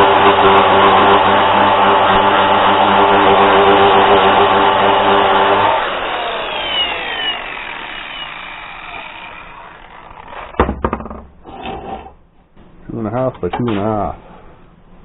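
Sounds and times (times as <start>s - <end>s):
power tool motor winding down: 0.0s - 10.6s.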